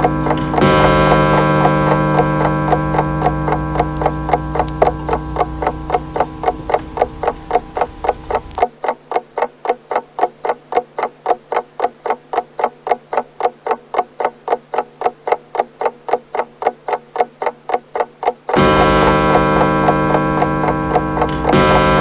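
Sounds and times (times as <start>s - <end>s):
low hum: 0.0s - 8.6s
clock pendulum ticking: 0.0s - 22.0s.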